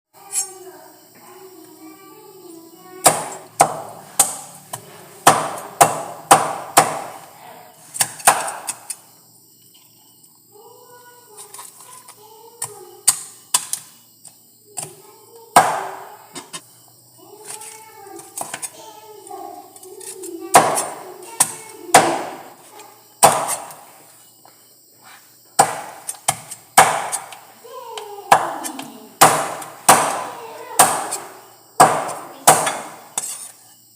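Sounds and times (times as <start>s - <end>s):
cleaver chopping on cutting board: 3.0s - 7.2s, 8.0s - 8.9s, 20.0s - 22.4s, 23.2s - 23.8s, 25.6s - 27.4s, 28.3s - 31.2s, 31.8s - 33.4s
knife chopping chicken: 30.8s - 31.2s, 31.8s - 33.4s.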